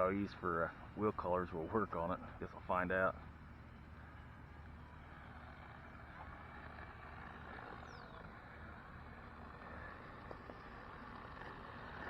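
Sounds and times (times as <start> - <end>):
distant rc plane motor whine: 3.3 - 12.0.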